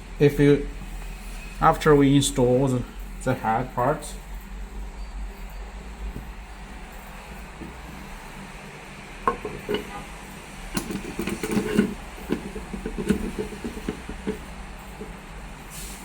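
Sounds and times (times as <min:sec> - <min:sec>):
metal parts knocking and clinking: 0:09.2 - 0:10.0, 0:10.7 - 0:15.3
metal parts clicking: 0:09.3 - 0:10.0, 0:10.7 - 0:15.2.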